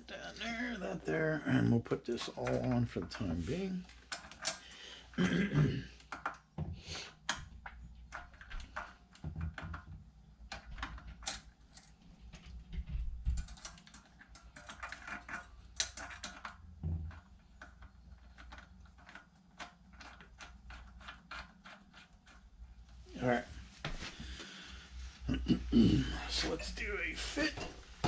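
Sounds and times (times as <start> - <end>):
metal parts clicking and clunking: 10.5 - 12.5, 13.3 - 22.5.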